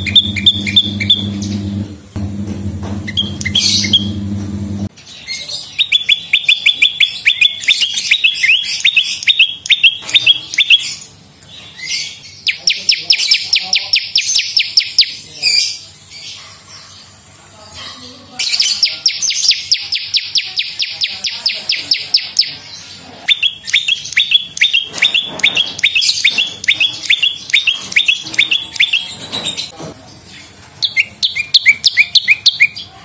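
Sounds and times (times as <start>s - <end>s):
bird chirping and trilling: 0.0s - 1.8s, 2.8s - 4.3s, 4.9s - 33.0s
low steady hum: 0.0s - 4.9s.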